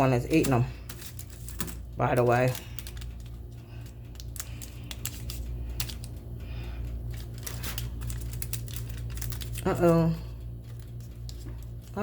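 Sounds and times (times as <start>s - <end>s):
steady low hum: 0.0s - 12.0s
cookies torn from baking tray: 7.1s - 9.6s.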